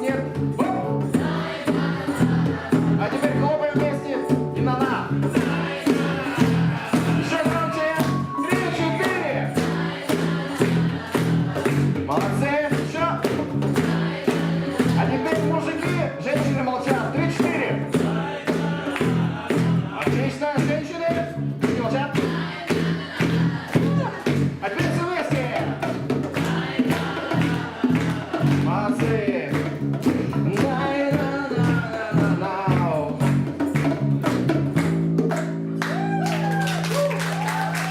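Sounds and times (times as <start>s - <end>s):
rock band playing: 0.0s - 19.9s
group of voices singing: 0.0s - 33.3s.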